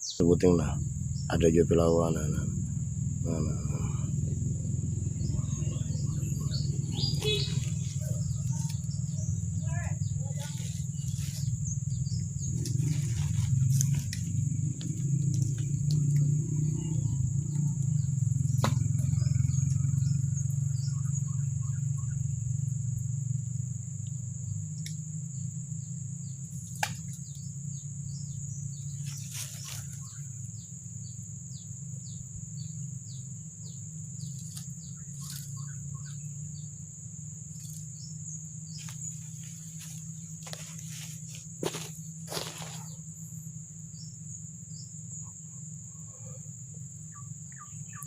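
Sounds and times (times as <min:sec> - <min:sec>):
high-pitched insect drone: 0:00.0 - 0:48.0
low rumble: 0:00.7 - 0:24.4
short bird chirps: 0:05.2 - 0:09.3.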